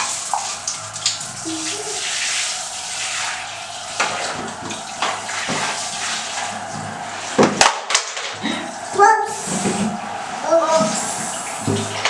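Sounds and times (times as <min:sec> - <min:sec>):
water running from a tap: 0:00.0 - 0:12.0
sharp splashes or knocks: 0:02.0 - 0:08.8.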